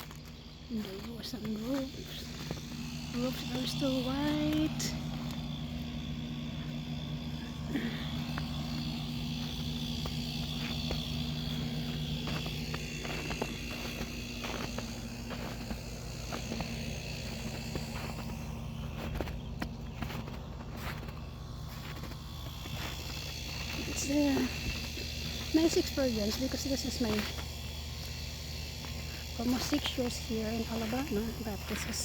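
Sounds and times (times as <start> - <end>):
low mechanical hum: 0.0 - 32.0
small clicks and ticks: 0.0 - 32.0.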